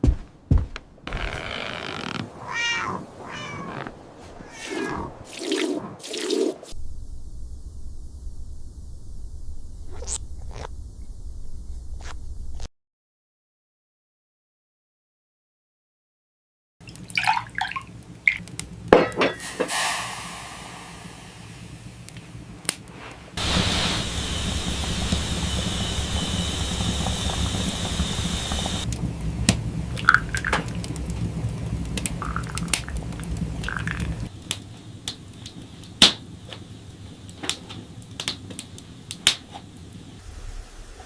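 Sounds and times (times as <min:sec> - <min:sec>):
water running: 0:01.1 - 0:06.8, 0:16.8 - 0:22.5, 0:23.4 - 0:34.3.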